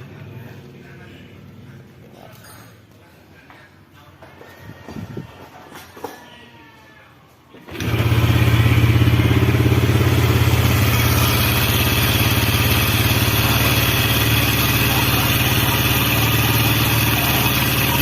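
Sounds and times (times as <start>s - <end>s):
vehicle engine idling: 7.8s - 18.0s.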